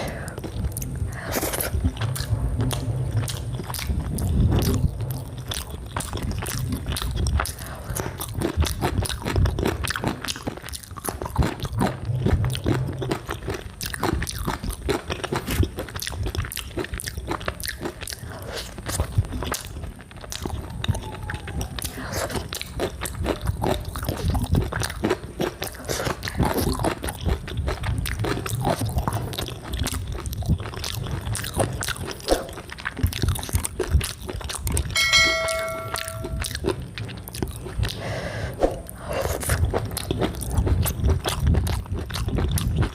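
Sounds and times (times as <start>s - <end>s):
chewing and wet mouth smacks: 0.0s - 35.0s, 36.4s - 42.9s
short steady tone: 35.0s - 36.4s.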